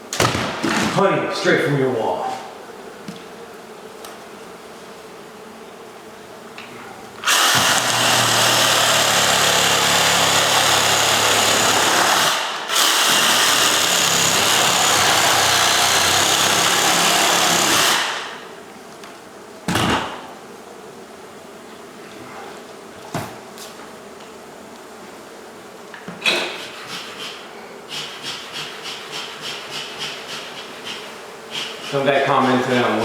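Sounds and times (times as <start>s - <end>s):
electric tool motor running: 7.2s - 18.4s.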